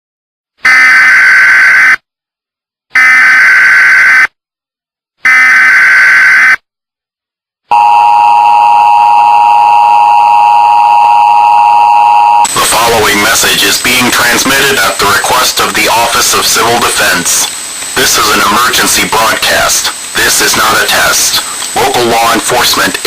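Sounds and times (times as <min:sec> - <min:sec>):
harsh digital data buzz: 0:03.0 - 0:04.3, 0:05.3 - 0:06.6, 0:12.3 - 0:23.0
two-tone attention signal: 0:07.7 - 0:12.5.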